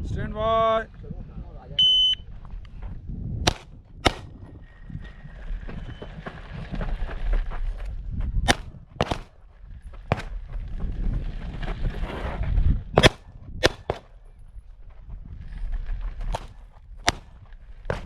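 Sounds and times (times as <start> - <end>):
handgun shots: 3.5 - 4.4, 8.5 - 9.3, 13.0 - 14.1, 16.3 - 18.0.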